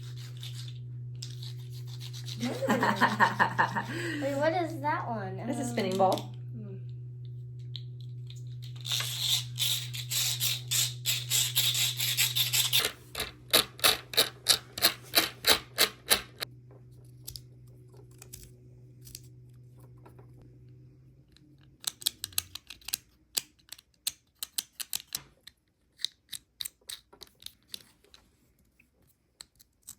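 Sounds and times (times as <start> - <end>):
steady low hum: 0.0 - 21.6.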